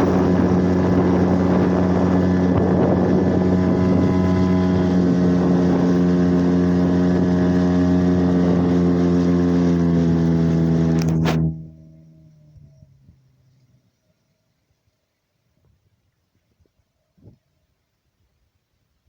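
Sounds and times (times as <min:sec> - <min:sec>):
wind noise on microphone: 0:00.0 - 0:11.8, 0:15.6 - 0:17.5
outboard motor running: 0:00.0 - 0:13.2.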